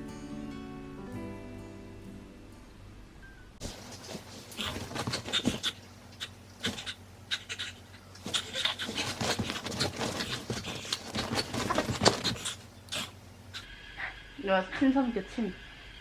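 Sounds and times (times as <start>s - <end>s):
dog panting: 3.7s - 14.1s.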